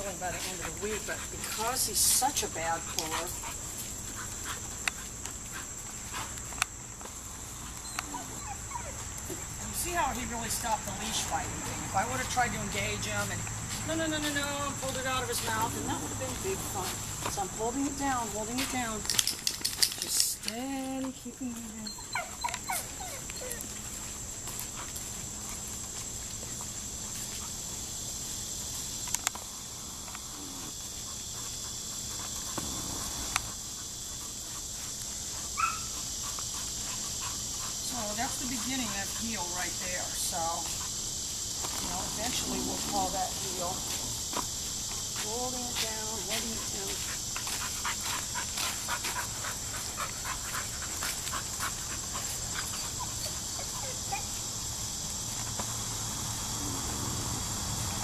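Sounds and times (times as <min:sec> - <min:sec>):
insects chirring: 0:00.0 - 0:58.0
puppy panting: 0:00.1 - 0:06.9, 0:07.5 - 0:13.4, 0:21.8 - 0:27.6, 0:30.6 - 0:41.0, 0:46.1 - 0:54.6
puppy whining: 0:07.8 - 0:09.2, 0:21.8 - 0:23.8, 0:52.7 - 0:54.4.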